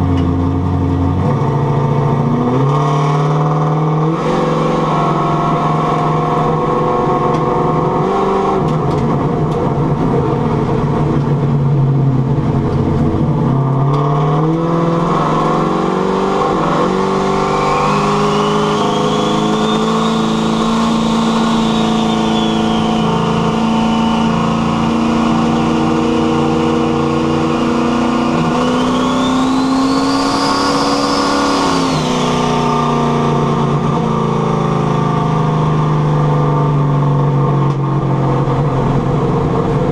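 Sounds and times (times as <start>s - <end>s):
turbocharged engine running hard: 0.0s - 39.9s
high turbo whistle: 17.2s - 26.6s, 28.2s - 33.2s.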